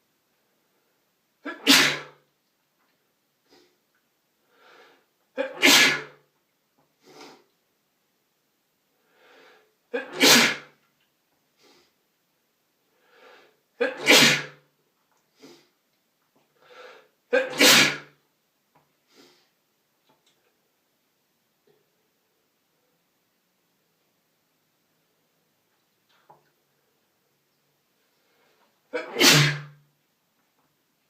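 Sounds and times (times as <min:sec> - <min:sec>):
breathy build-up before sneeze: 0:01.4 - 0:02.2, 0:04.6 - 0:06.2, 0:07.0 - 0:07.5, 0:09.2 - 0:10.8, 0:13.1 - 0:14.6, 0:16.7 - 0:18.2, 0:28.9 - 0:29.8
person sneezing: 0:01.4 - 0:02.2, 0:05.4 - 0:06.2, 0:09.9 - 0:10.8, 0:13.8 - 0:14.6, 0:16.8 - 0:18.2, 0:28.9 - 0:29.8.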